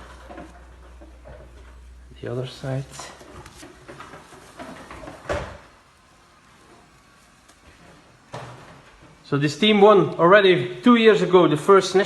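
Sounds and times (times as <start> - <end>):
faint handling noises: 0.0 - 5.3.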